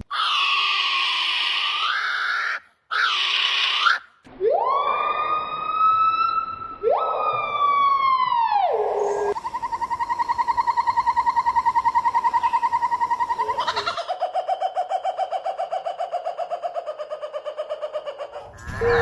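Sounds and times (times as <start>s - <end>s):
bird harsh raspy cries: 0.1s - 4.1s, 8.8s - 14.2s
bird siren-like wails: 4.3s - 14.0s.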